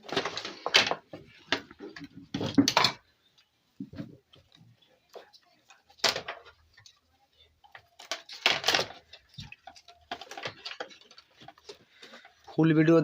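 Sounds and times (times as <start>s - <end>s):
plastic and metal parts knocking: 7.7s - 12.4s.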